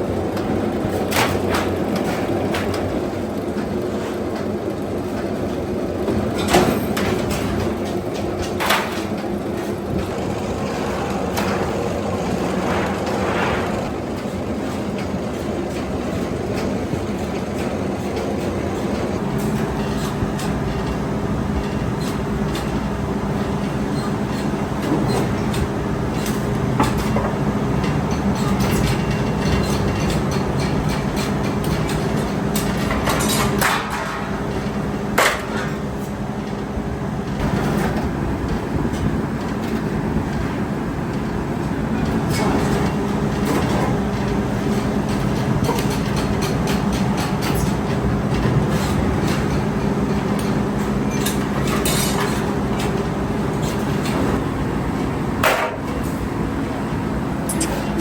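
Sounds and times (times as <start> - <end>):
metallic clicks and clatter: 57.5 - 58.0.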